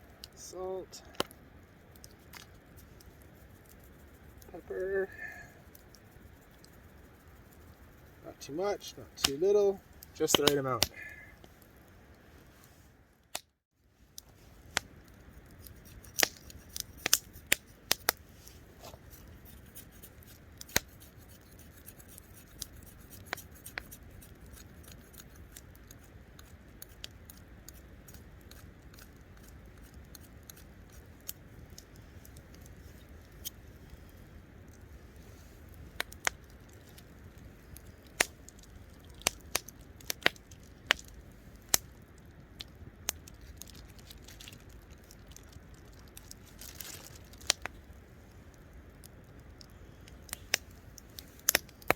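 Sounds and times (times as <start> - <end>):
campfire crackling and popping: 0.0 - 51.9
low steady hiss: 0.0 - 51.9.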